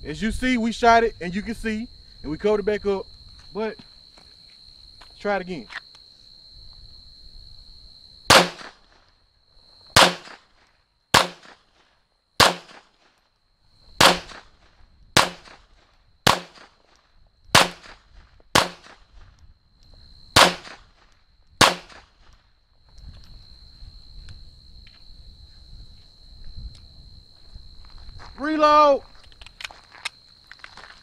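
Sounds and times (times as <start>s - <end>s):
pistol shots: 8.3s - 8.8s, 10.0s - 10.5s, 11.1s - 11.7s, 12.4s - 13.0s, 14.0s - 14.5s, 15.2s - 15.7s, 16.3s - 16.8s, 17.5s - 19.0s, 20.4s - 20.9s, 21.6s - 22.2s.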